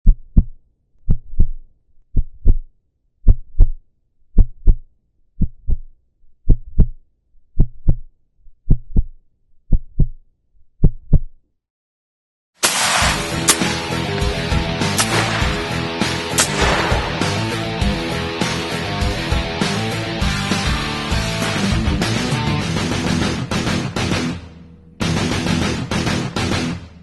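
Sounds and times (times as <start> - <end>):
heartbeat thumps: 0.0 - 1.6, 4.4 - 4.8, 6.5 - 7.0, 7.6 - 8.0, 9.7 - 10.2.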